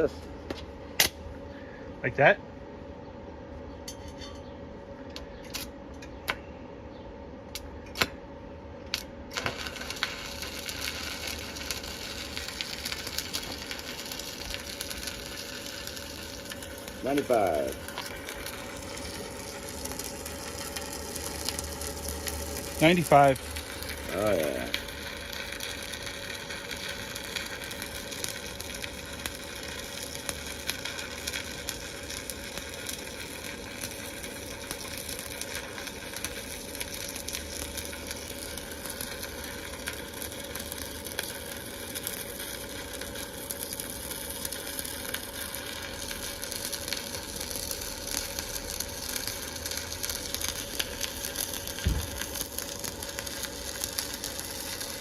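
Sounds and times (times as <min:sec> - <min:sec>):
arc welding crackle and sizzle: 0:00.0 - 0:02.4, 0:07.5 - 0:55.0
low thump: 0:51.8 - 0:52.2.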